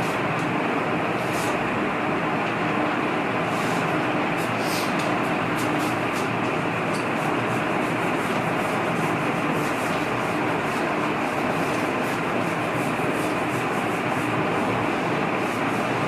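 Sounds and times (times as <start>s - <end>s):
marker rubbing on whiteboard: 5.6s - 14.4s.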